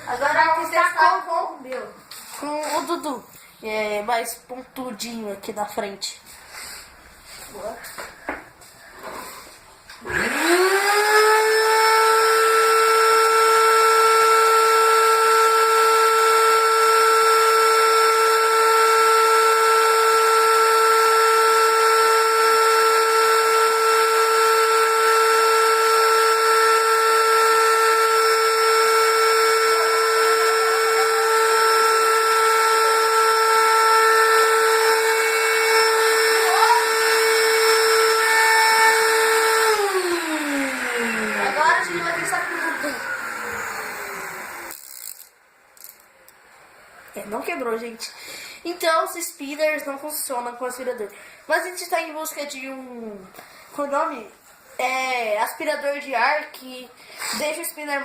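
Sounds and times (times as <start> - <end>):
vacuum cleaner whine: 7.9 - 45.0.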